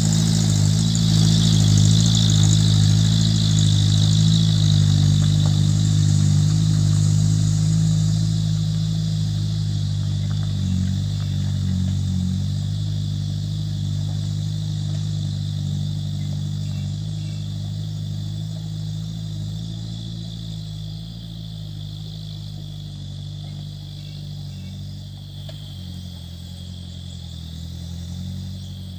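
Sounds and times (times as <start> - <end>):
truck engine running: 0.0 - 28.9.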